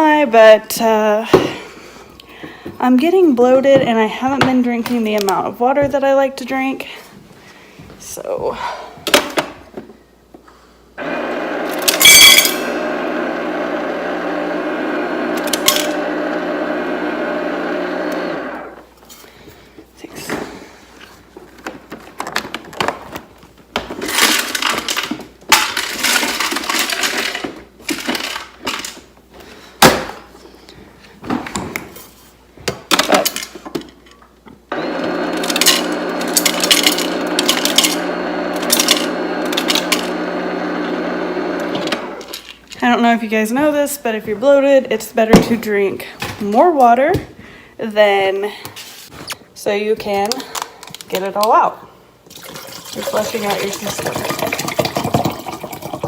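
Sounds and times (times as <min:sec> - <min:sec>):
refrigerator dispenser humming: 0:34.7 - 0:42.4.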